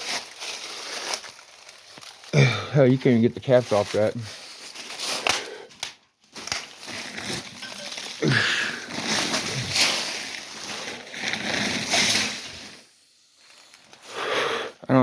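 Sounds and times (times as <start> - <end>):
rustling and scraping: 3.4 - 14.1.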